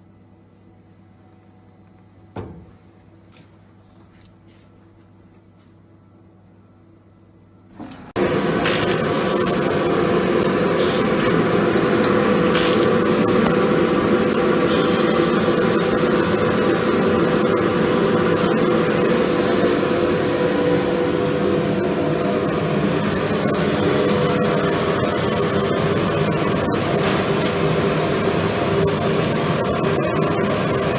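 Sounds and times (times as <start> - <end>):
laser cutting machine running: 8.2 - 30.9.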